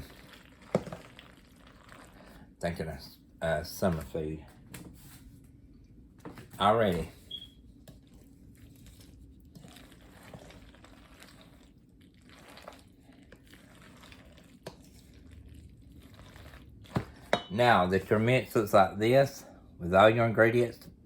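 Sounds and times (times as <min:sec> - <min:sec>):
soft wet squishing: 0:00.0 - 0:02.6, 0:05.4 - 0:17.4.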